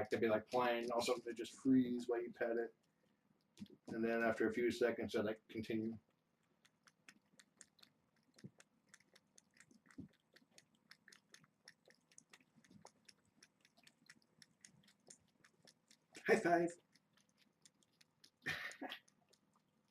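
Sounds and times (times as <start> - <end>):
cat chewing crunchily: 6.0 - 19.9.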